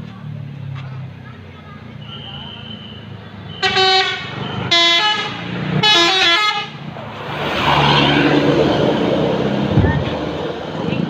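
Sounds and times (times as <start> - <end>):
multi-tone bus horn blasts: 2.0 - 6.8.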